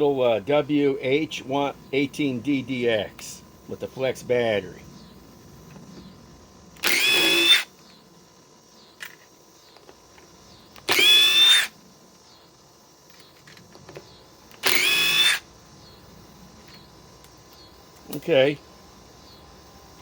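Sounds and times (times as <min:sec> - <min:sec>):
impact driver motor whine: 0:05.3 - 0:20.0.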